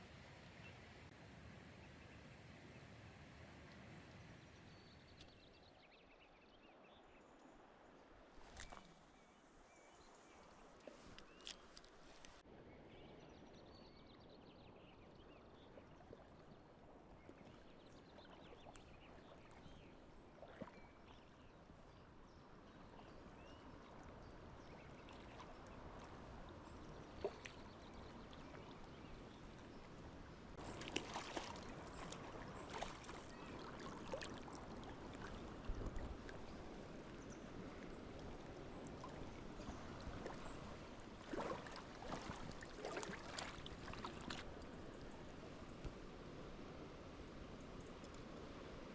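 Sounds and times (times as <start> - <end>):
stream running: 7.2 - 12.4, 15.4 - 48.9.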